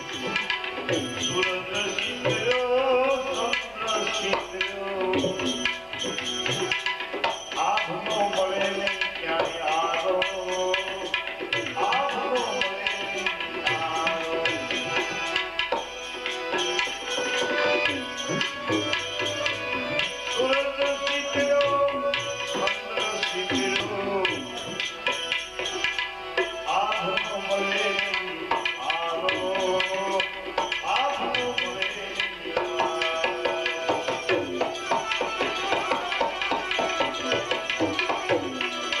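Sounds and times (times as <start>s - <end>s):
tabla rhythm: 0.0s - 39.0s.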